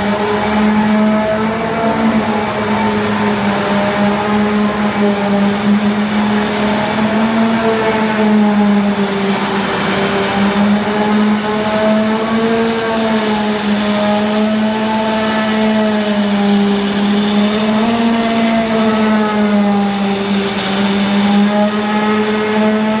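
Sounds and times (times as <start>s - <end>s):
machine humming: 0.0s - 23.0s.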